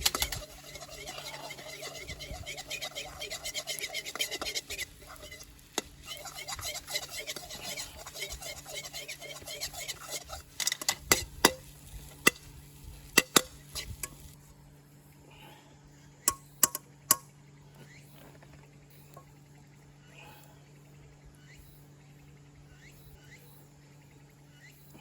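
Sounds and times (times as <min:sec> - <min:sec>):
utensils clinking against cookware: 0:00.0 - 0:11.6.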